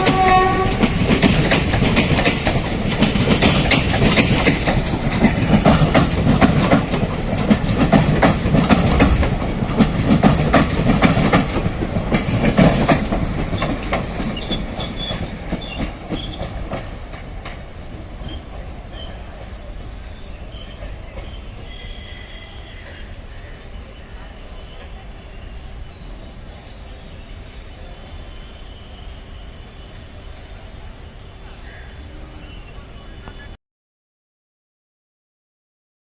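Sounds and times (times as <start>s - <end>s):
train wheels clattering over rail joints: 0.0s - 19.3s
train rumble: 0.0s - 33.6s.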